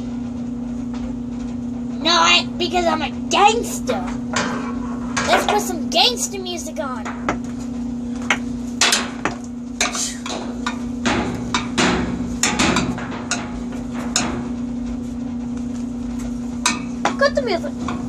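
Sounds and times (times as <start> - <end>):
steady low hum: 0.0 - 18.0
hard objects knocking: 7.0 - 7.6, 8.2 - 14.8.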